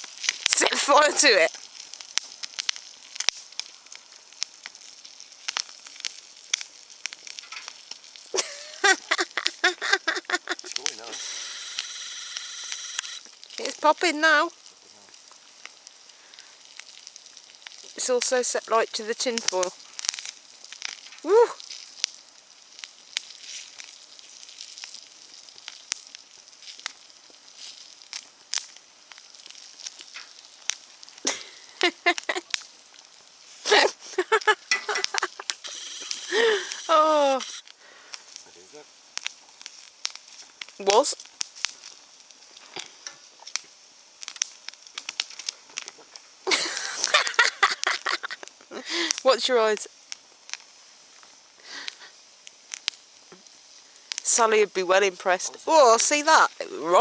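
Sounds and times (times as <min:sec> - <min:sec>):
paper bag burning crackle: 0:00.0 - 0:57.0
popcorn kernels popping: 0:01.5 - 0:13.9, 0:14.5 - 0:33.0, 0:33.7 - 0:38.3, 0:39.1 - 0:54.5.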